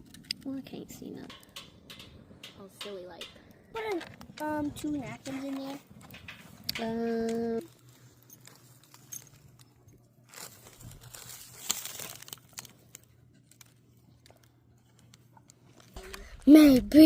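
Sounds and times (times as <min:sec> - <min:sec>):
paper napkins crinkling: 0:07.6 - 0:16.3.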